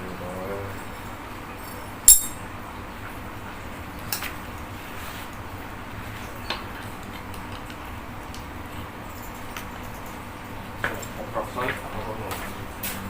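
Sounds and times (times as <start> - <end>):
steady low background hum: 0.0 - 13.0
metal tool clicks: 2.1 - 2.4.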